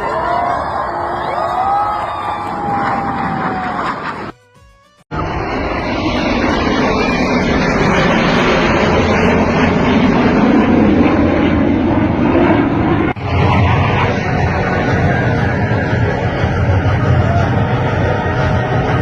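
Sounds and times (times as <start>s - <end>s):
aircraft engine roar: 0.0s - 19.0s.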